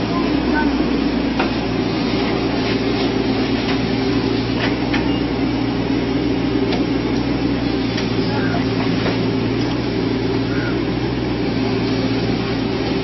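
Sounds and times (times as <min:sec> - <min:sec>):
large engine running: 0:00.0 - 0:13.0.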